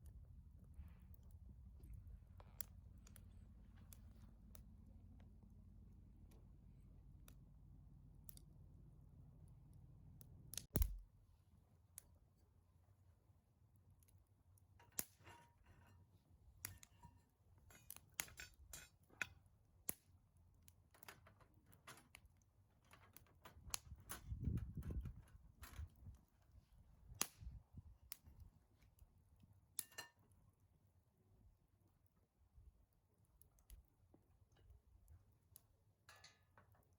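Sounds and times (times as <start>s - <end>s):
sharp clicks and knocks: 10.6s - 11.1s.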